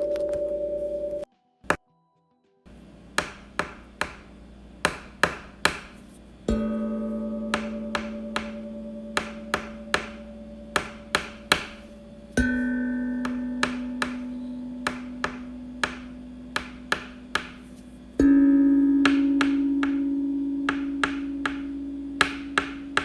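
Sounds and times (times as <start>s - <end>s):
ringing pitched note: 6.5s - 16.6s, 18.2s - 23.0s.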